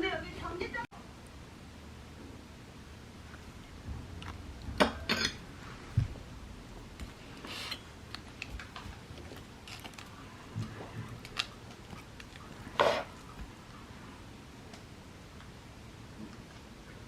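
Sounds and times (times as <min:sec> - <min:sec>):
dishes and cutlery clinking: 0:04.8 - 0:05.4
dishes clattering: 0:04.8 - 0:05.6.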